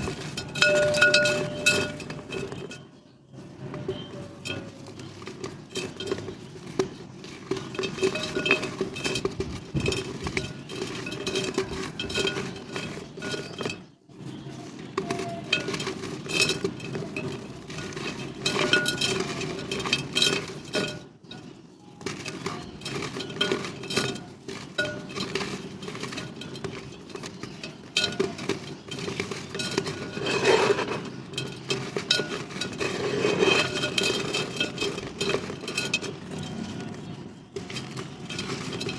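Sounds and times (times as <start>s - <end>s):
dried mud and clay crumbling: 0.0s - 38.9s.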